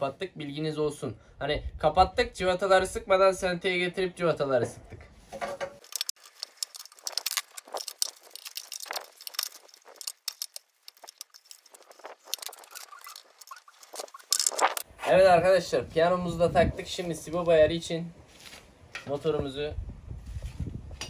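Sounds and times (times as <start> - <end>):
metal engine parts clicking: 5.8 - 14.8.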